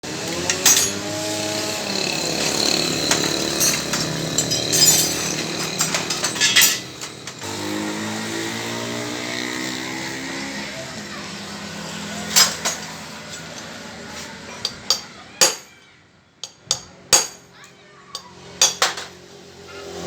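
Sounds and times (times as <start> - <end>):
sharp metallic clanks: 0.4 - 7.7, 12.3 - 13.7, 16.4 - 17.6.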